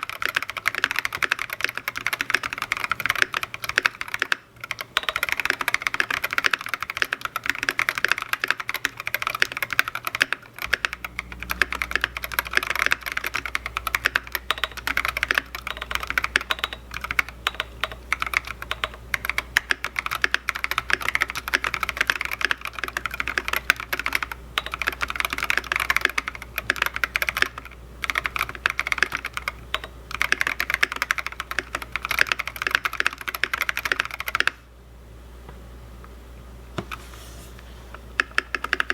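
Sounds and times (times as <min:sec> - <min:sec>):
fast mechanical keyboard typing: 0:00.0 - 0:34.6, 0:38.2 - 0:38.9.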